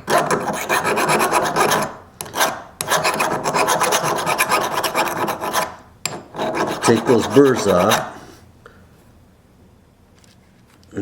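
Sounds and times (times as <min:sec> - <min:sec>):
file rasping on steel blade: 0:00.0 - 0:08.3.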